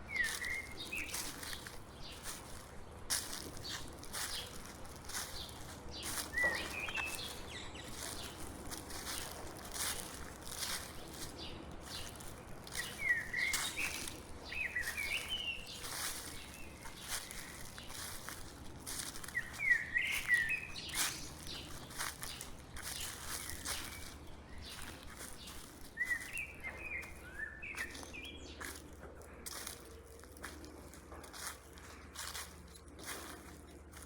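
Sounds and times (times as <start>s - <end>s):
footsteps crunching on dry leaves: 0.0s - 34.0s.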